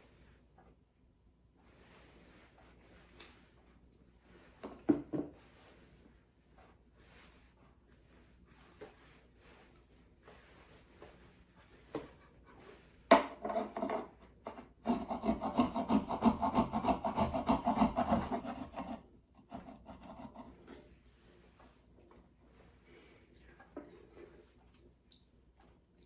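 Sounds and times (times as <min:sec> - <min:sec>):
scraping ginger: 0:13.4 - 0:20.6.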